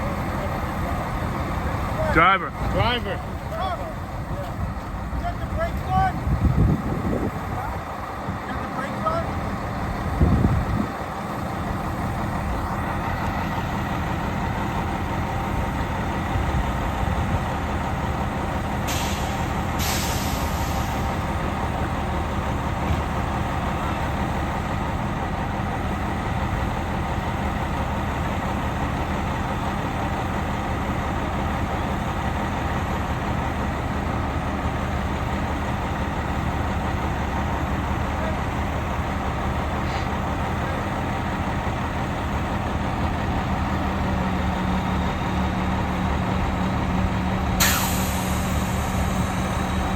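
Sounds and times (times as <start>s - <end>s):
truck engine idling: 0.0s - 49.9s
air brake hiss: 18.8s - 21.1s, 47.6s - 49.6s.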